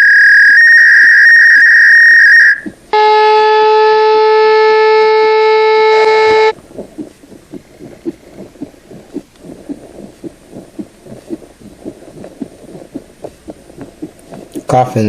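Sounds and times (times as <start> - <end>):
soft low thuds: 6.3 - 14.9.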